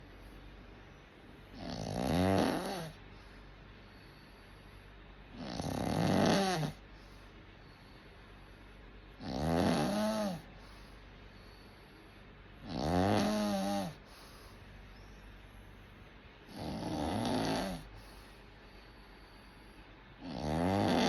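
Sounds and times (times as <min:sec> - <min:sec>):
quiet breathing: 0:00.0 - 0:01.6, 0:02.8 - 0:05.4, 0:06.6 - 0:09.2, 0:09.8 - 0:12.6, 0:13.3 - 0:16.5, 0:17.1 - 0:20.4
person snoring: 0:01.6 - 0:03.0, 0:05.4 - 0:06.8, 0:09.2 - 0:10.5, 0:12.6 - 0:14.0, 0:16.5 - 0:17.9, 0:20.2 - 0:21.0.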